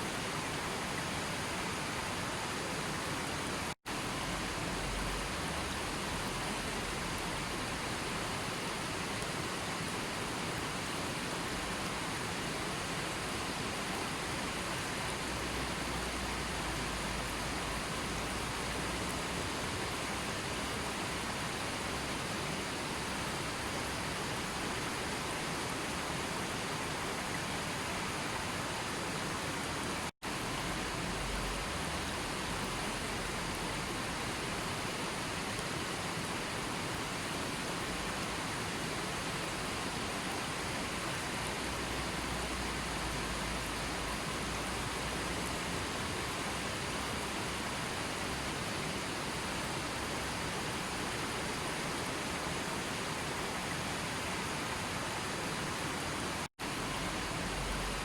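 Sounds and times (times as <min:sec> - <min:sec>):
water rushing: 0:00.0 - 0:58.0.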